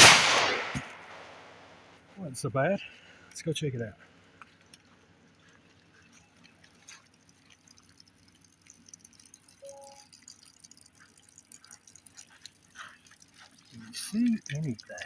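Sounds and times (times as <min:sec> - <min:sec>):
water dripping and trickling: 0:04.0 - 0:15.0.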